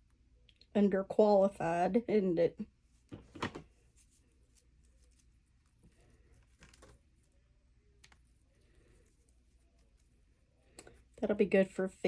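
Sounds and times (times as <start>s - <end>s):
faint low hum: 0.0s - 12.0s
soft handling clicks and rustles: 2.9s - 11.2s.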